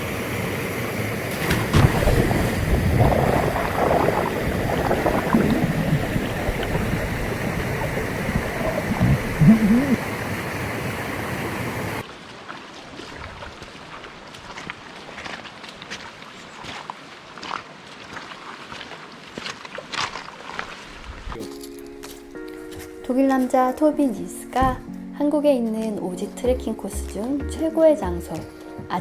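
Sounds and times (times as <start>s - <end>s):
rushing stream water: 0.0s - 21.1s.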